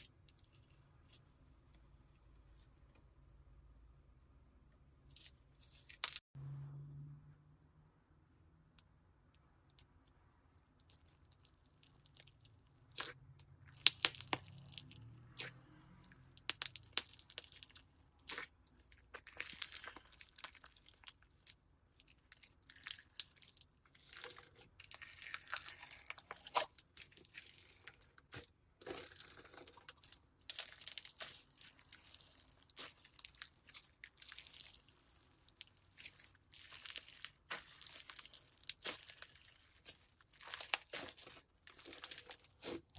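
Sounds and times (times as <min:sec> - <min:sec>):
slime crackling and popping: 0:10.8 - 0:15.5, 0:16.3 - 0:42.9.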